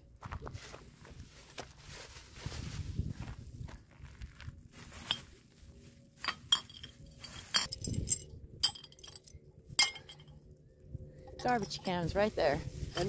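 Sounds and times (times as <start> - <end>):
glass bottles clinking: 6.2 - 10.3, 11.3 - 12.0.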